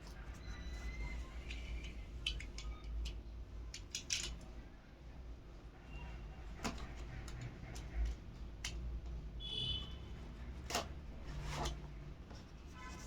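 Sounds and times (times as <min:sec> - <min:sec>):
packaging clicks and taps: 0:01.4 - 0:04.5.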